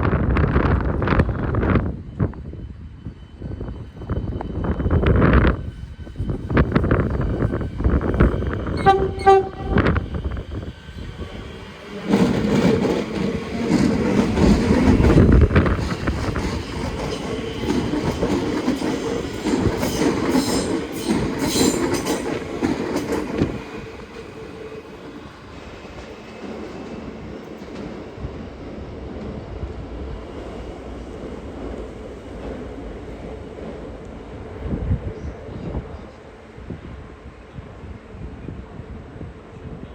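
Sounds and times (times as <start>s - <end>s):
wind buffeting microphone: 0.0s - 39.9s
train horn blasts: 8.7s - 10.2s.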